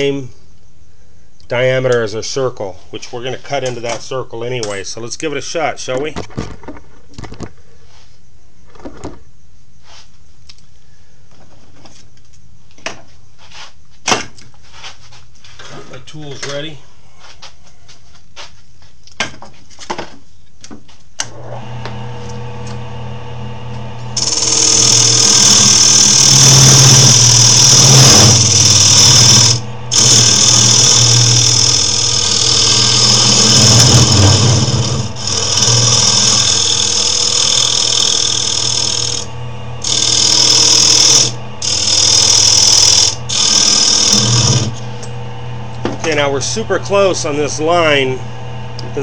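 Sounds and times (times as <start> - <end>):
lathe motor humming: 21.3 - 49.0
turning tool scraping wood: 24.2 - 45.1.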